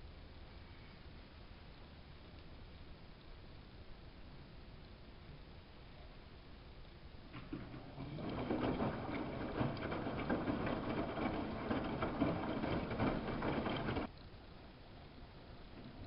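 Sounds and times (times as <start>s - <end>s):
washing machine water in drum: 7.3s - 14.1s.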